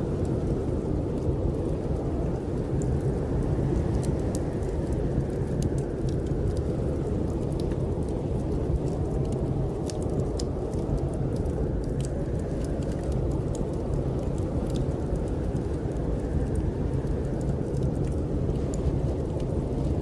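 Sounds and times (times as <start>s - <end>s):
snowstorm wind rumble: 0.0s - 20.0s
wood fire crackling: 0.0s - 20.0s.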